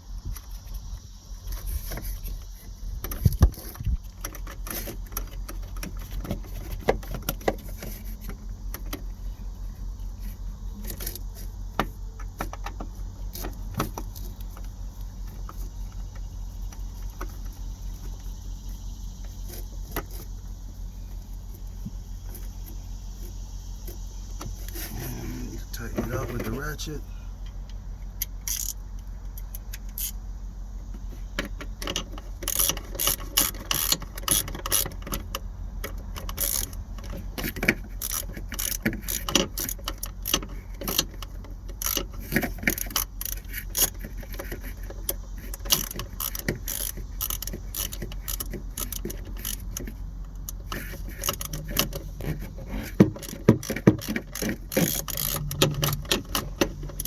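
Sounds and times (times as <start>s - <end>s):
steady low hum: 0.0s - 57.0s
ratchet wrench clicking: 28.2s - 30.2s, 31.9s - 57.0s.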